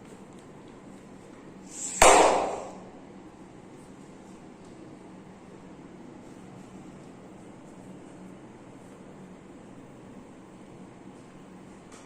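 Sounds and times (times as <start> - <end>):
hiss: 1.6 - 2.9.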